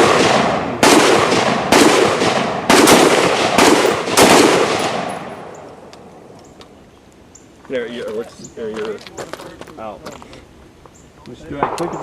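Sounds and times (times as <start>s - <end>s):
gunshots with echo: 0.0s - 5.5s.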